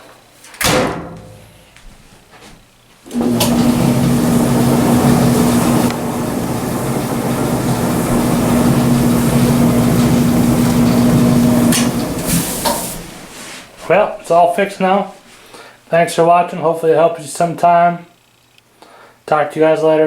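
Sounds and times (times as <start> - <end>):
dryer drum turning: 0.5 - 1.7, 3.0 - 14.0
clothes dryer motor hum: 3.0 - 14.0.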